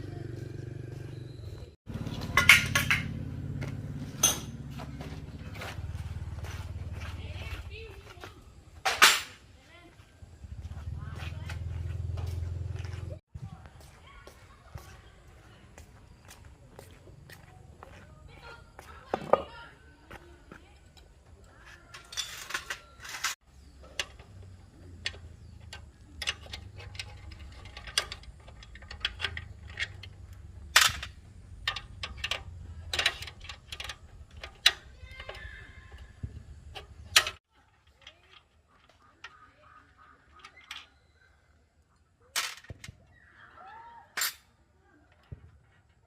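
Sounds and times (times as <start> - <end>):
hand tools knocking on metal: 2.0 - 5.2.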